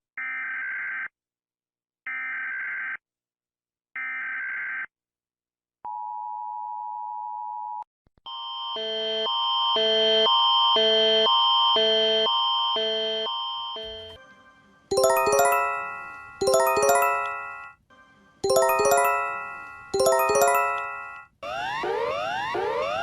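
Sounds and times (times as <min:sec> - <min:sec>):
electronic alarm switching tones: 0:14.9 - 0:17.8, 0:18.4 - 0:23.0.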